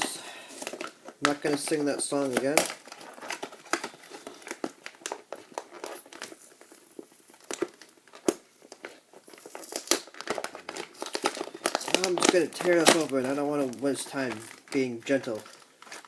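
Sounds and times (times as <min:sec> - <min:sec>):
packaging crinkling: 0:00.0 - 0:16.0.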